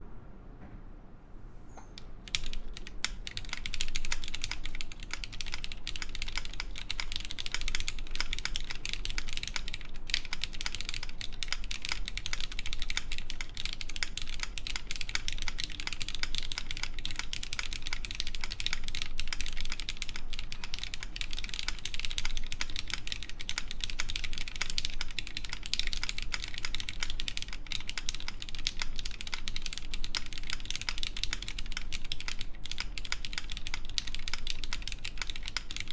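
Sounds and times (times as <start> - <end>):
mechanical keyboard typing: 2.0 - 35.9.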